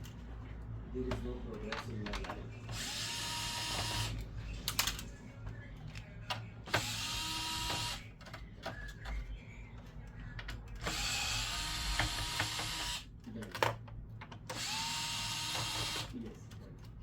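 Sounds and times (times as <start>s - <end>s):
electric screwdriver running: 2.7s - 4.2s, 6.7s - 8.0s, 10.9s - 13.0s, 14.5s - 16.1s.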